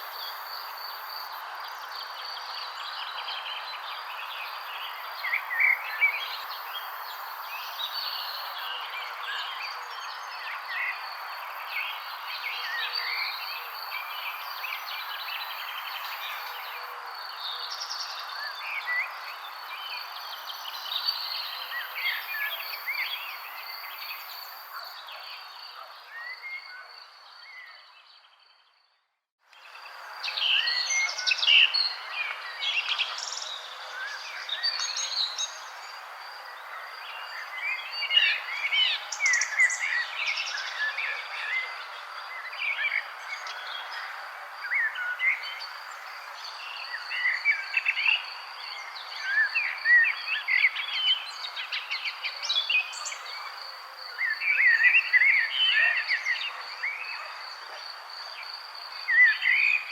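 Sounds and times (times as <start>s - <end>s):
songbirds chirping: 0.0s - 59.9s.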